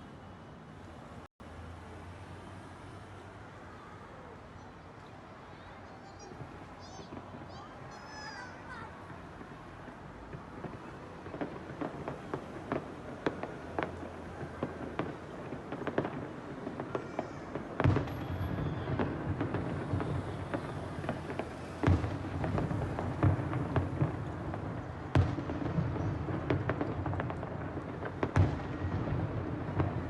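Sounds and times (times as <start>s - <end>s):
fireworks crackling pops: 6.1s - 30.0s
fireworks booms: 6.2s - 30.0s.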